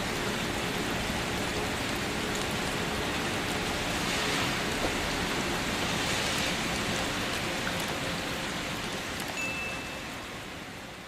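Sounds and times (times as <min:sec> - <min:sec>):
gentle rain: 0:00.0 - 0:11.0
brief high tone: 0:09.4 - 0:10.1.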